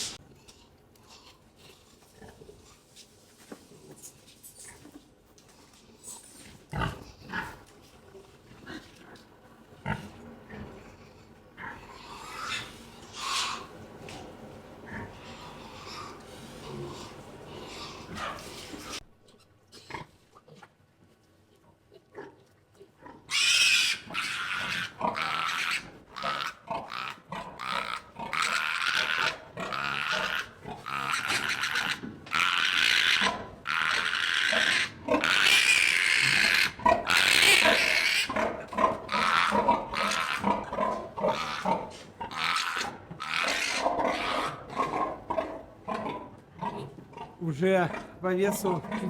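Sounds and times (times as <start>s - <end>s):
pig grunting: 6.7s - 7.6s, 14.8s - 20.7s, 21.9s - 49.0s
animal harsh cries: 23.3s - 26.5s.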